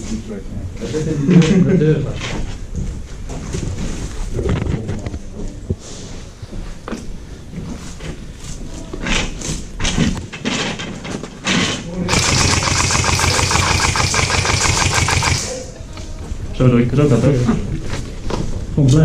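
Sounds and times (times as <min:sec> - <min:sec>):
airsoft rifle full-auto burst: 0:12.1 - 0:15.8.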